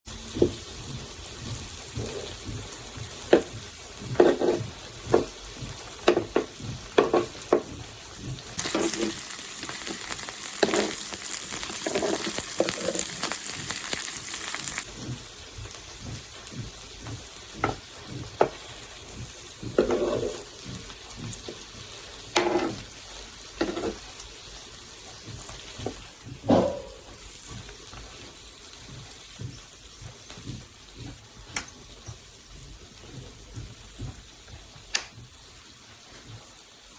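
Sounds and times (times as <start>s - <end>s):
utensil scraping pan: 0.1s - 5.4s, 6.0s - 14.9s, 17.6s - 24.2s, 25.7s - 27.3s
food sizzling in hot oil: 0.1s - 36.9s.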